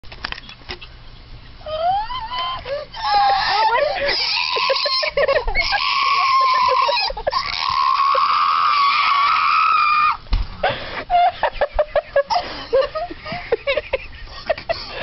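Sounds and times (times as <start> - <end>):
woman screaming: 1.6 - 10.2
woman gasping cries: 1.7 - 5.0.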